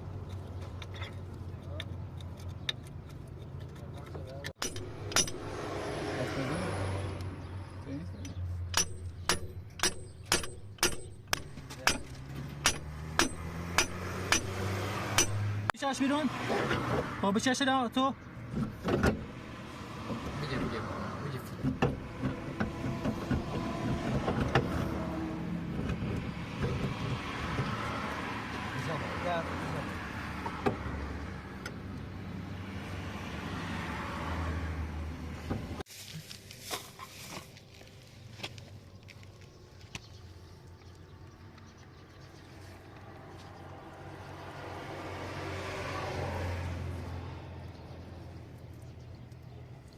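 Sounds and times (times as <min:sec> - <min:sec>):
hammer striking metal: 0:04.6 - 0:05.6, 0:08.7 - 0:15.5.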